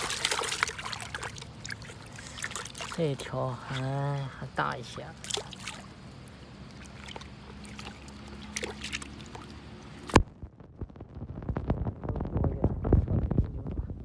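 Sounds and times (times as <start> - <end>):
water trickling and sloshing: 0.0 - 10.3
low steady hum: 0.0 - 14.0.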